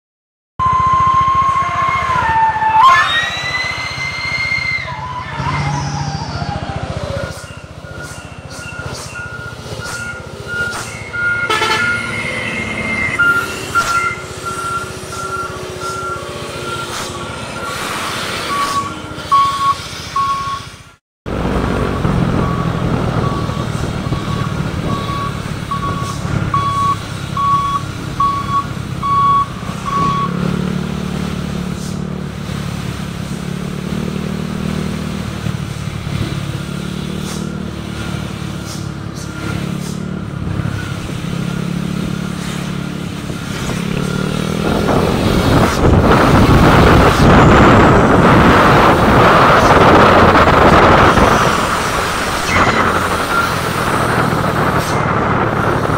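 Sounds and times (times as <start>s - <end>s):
horn beeping: 0.6s - 5.7s, 7.1s - 20.8s, 21.8s - 30.5s, 52.2s - 55.8s
heavy vehicle engine revving: 0.6s - 55.9s.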